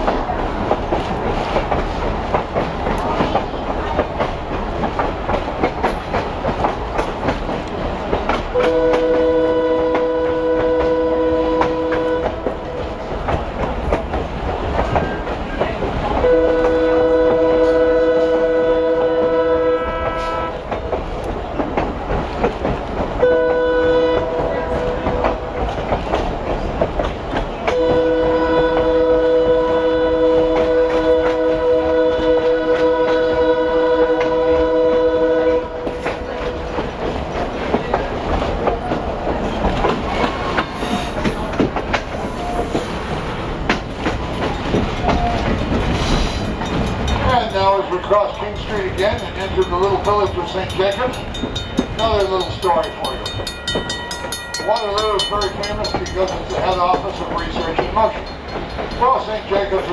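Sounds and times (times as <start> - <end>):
wheel clatter on rails: 0.0 - 19.2, 19.9 - 33.4, 34.1 - 59.9
train rumble: 0.0 - 59.9
train horn blasts: 8.6 - 13.0, 16.2 - 20.7, 23.2 - 25.4, 27.7 - 36.9.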